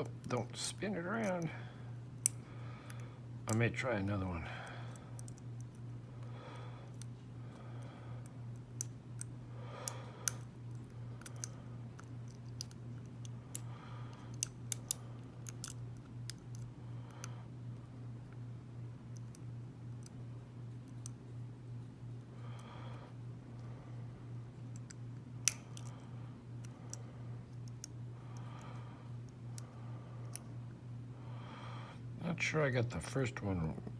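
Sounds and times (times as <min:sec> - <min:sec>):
steady low hum: 0:00.0 - 0:33.9
lock pick clicking and scraping: 0:04.9 - 0:05.8, 0:08.2 - 0:17.3, 0:24.6 - 0:26.0, 0:26.6 - 0:30.6.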